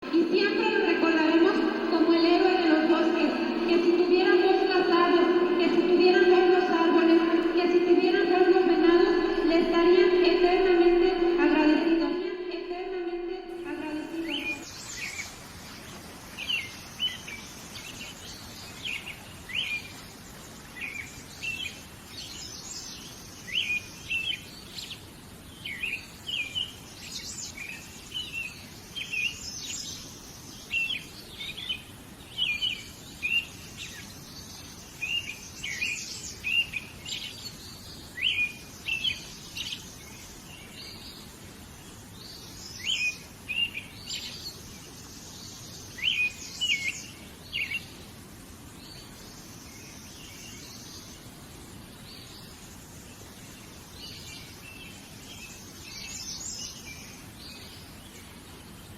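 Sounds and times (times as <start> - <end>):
faint steady background hiss: 0.0 - 58.9
small birds chirping: 13.4 - 58.9.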